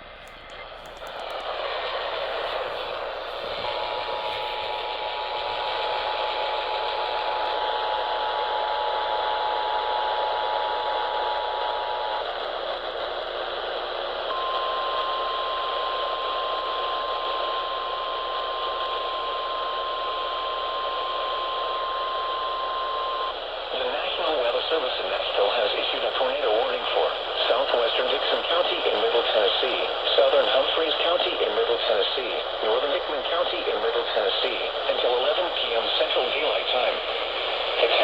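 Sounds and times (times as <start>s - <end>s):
radio static hiss: 0.0s - 38.0s
two-tone alarm: 14.3s - 23.3s
steady warning tone: 14.3s - 38.0s.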